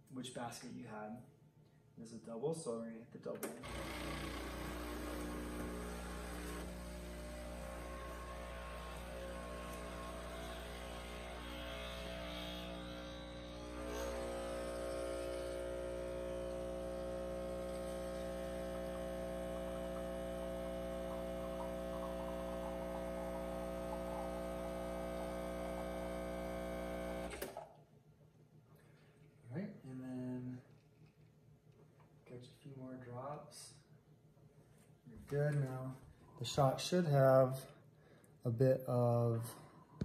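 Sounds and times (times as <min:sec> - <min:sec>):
espresso machine pump humming: 0:03.6 - 0:27.4.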